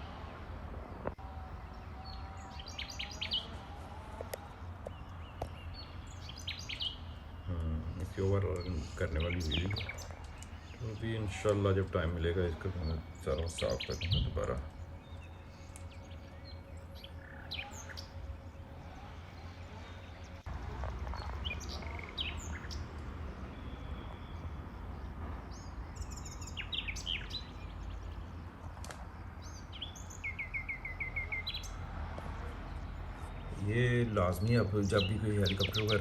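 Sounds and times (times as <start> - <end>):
small birds chirping: 0.0 - 36.0
steady low rumble: 3.5 - 30.2.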